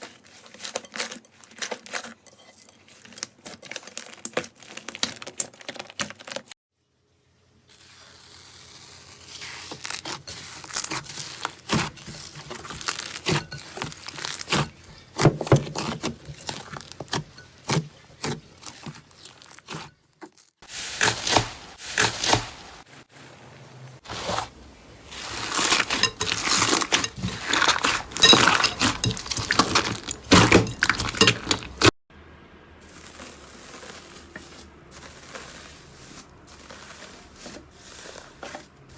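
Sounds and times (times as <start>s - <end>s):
slime crackling and popping: 7.8s - 17.8s, 25.2s - 31.9s.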